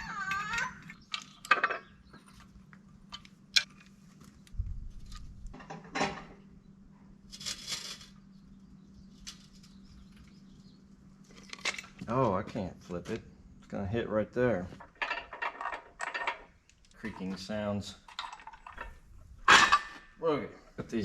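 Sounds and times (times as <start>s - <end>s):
small metal parts clinking: 0.4s - 2.4s, 14.8s - 17.2s, 18.0s - 19.0s.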